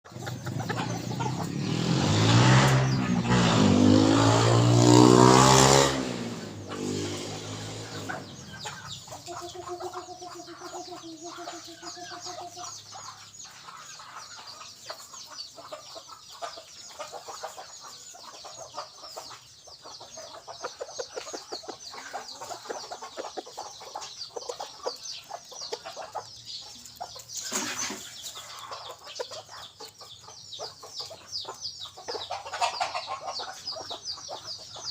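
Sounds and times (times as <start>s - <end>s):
junglefowl clucking: 0.1s - 3.7s, 6.6s - 34.9s
motor vehicle passing: 0.1s - 14.4s
junglefowl calling: 32.1s - 34.0s.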